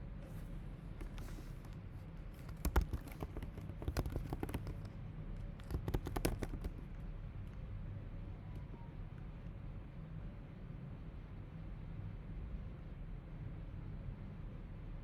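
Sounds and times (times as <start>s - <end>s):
keyboard typing: 1.0s - 4.9s, 5.5s - 7.0s.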